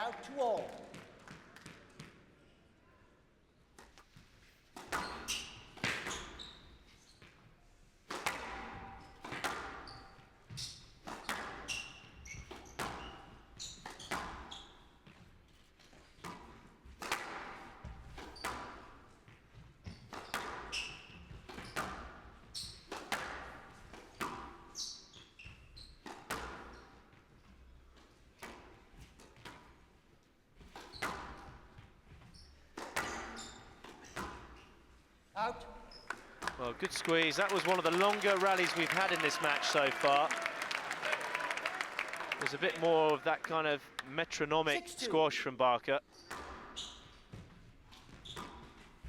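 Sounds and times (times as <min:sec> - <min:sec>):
shoes squeaking on court floor: 0:03.8 - 0:07.8, 0:08.6 - 0:16.7, 0:17.8 - 0:23.0, 0:23.8 - 0:40.2, 0:46.0 - 0:49.0
squash ball hitting rackets and walls: 0:03.8 - 0:34.8, 0:46.1 - 0:49.0.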